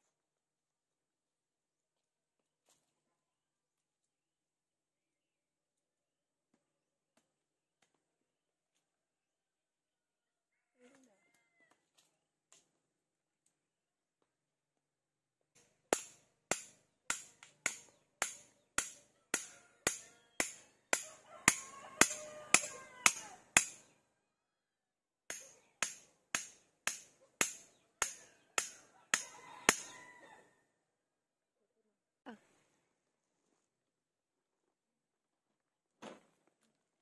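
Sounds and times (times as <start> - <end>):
hand tool striking: 15.6 - 23.9, 25.3 - 29.9.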